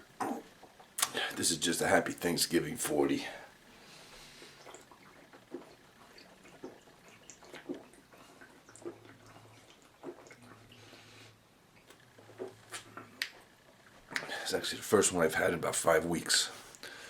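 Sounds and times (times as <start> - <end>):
person gulping and swallowing: 0.0 - 1.4, 4.4 - 11.0, 11.7 - 14.3.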